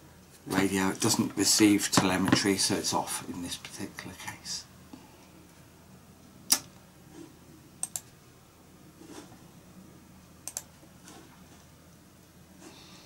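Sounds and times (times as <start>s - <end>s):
computer mouse clicking: 7.8s - 8.1s, 10.4s - 10.8s.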